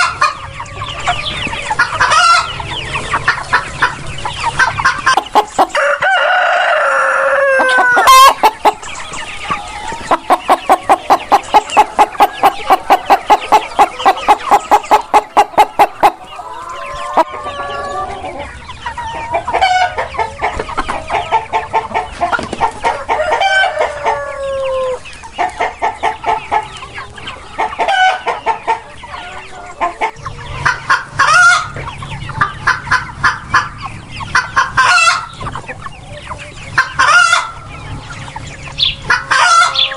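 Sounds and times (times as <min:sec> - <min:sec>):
chickens clucking: 0:00.0 - 0:39.9
chickens gliding calls: 0:00.0 - 0:39.9
rooster crowing: 0:05.6 - 0:18.4, 0:22.9 - 0:25.0.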